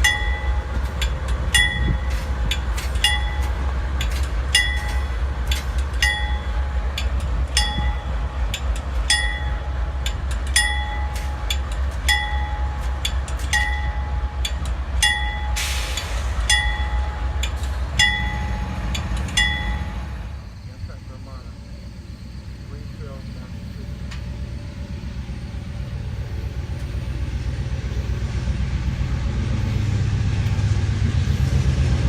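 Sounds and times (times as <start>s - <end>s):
bell dinging: 0.0s - 2.2s, 3.0s - 3.7s, 4.5s - 5.2s, 6.0s - 15.8s, 16.4s - 20.1s
wheel clicks over rail joints: 0.0s - 20.0s
train passing with low rumble: 0.0s - 32.0s
short hiss: 15.6s - 16.5s.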